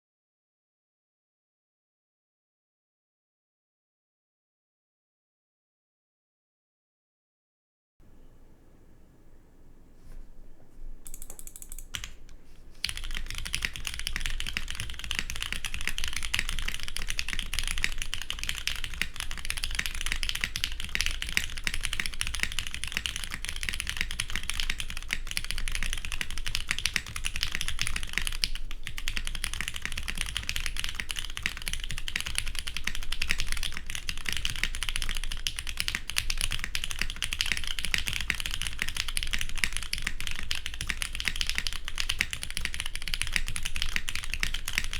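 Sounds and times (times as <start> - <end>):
mechanical keyboard typing: 11.0 - 44.9.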